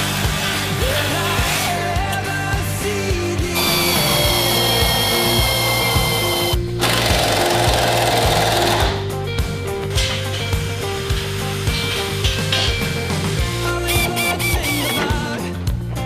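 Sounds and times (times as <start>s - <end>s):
rock music: 0.0s - 16.0s
power tool whining: 3.5s - 9.2s, 10.8s - 15.3s.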